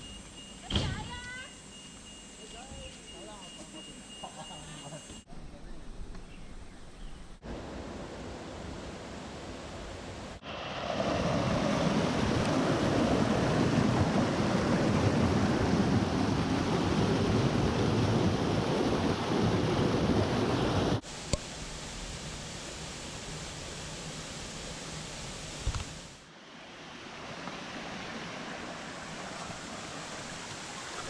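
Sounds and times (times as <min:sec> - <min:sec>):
rushing stream water: 0:07.4 - 0:31.0.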